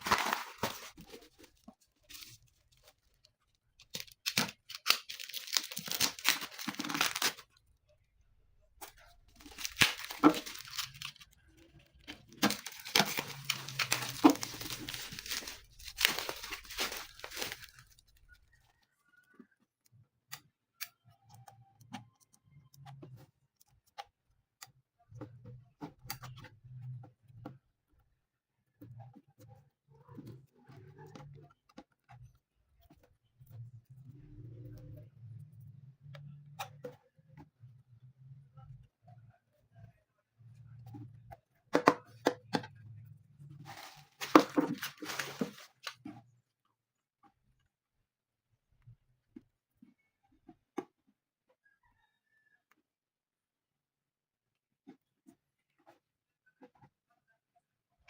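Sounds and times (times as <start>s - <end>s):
items clattering: 0.0s - 2.9s, 3.8s - 7.4s, 8.8s - 18.2s, 43.6s - 46.1s
package rustling: 0.0s - 7.5s, 9.3s - 18.3s, 43.6s - 46.0s
small objects clicking and tapping: 8.8s - 18.3s.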